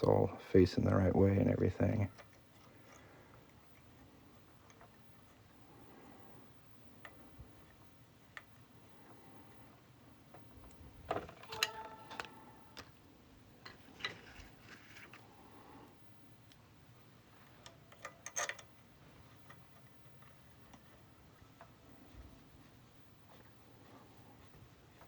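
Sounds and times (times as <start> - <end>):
plastic parts clicking and knocking: 10.4 - 12.9.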